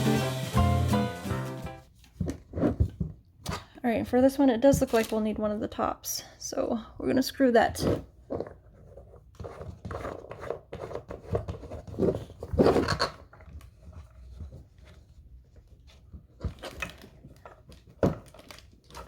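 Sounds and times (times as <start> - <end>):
plastic parts scraping and creaking: 7.8 - 19.0.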